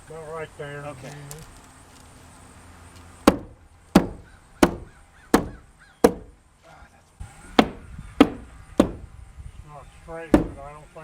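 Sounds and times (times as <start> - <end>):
hammer strikes: 3.2 - 6.4, 7.6 - 9.1, 10.3 - 10.6.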